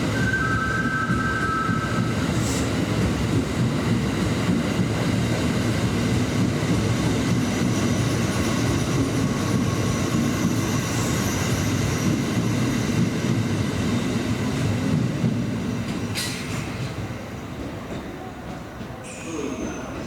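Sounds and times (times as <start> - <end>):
electric train rumbling: 0.0 - 20.0
train wheel squeal: 0.1 - 2.8, 6.7 - 14.2, 19.0 - 20.0.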